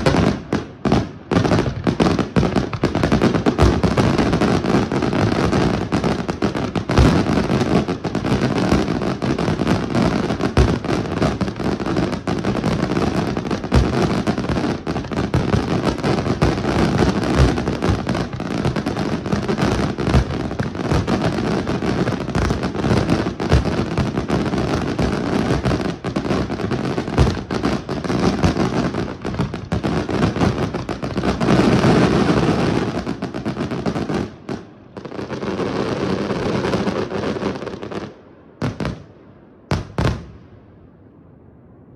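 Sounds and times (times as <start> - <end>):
fireworks bangs and crackling: 0.0 - 40.6.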